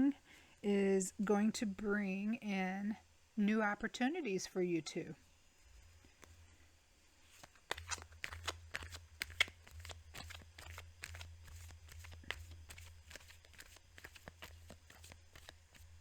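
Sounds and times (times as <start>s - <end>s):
low steady hum: 0.0s - 16.0s
cards being shuffled: 7.2s - 16.0s.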